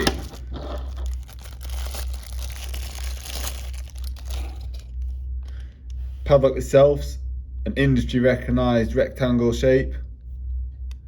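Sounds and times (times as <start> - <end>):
packaging crinkling and rustling: 0.0 - 5.1
steady low hum: 0.0 - 11.0.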